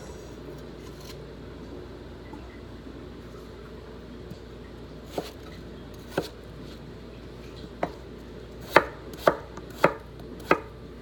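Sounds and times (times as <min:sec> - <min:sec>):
knife chopping on cutting board: 0:05.1 - 0:05.4, 0:06.0 - 0:06.4, 0:07.8 - 0:08.0, 0:08.6 - 0:10.8.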